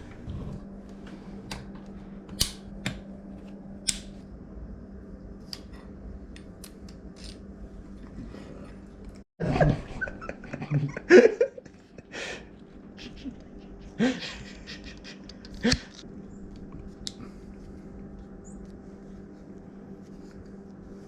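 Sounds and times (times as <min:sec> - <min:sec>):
steady low hum: 0:00.0 - 0:21.0
hands clicking on bicycle parts: 0:02.3 - 0:03.0.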